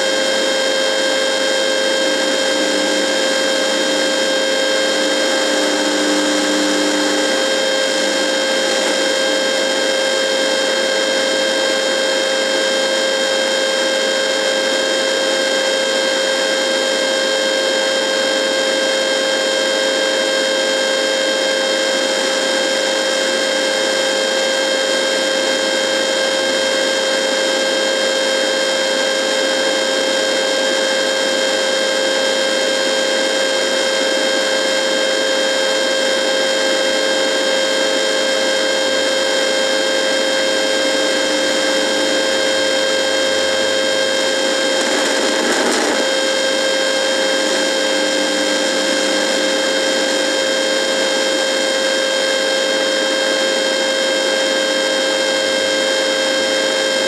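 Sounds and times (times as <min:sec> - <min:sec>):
radio electrical buzz: 0:00.0 - 0:12.5, 0:41.0 - 0:51.6
static crackle: 0:44.5 - 0:46.3, 0:47.3 - 0:48.2.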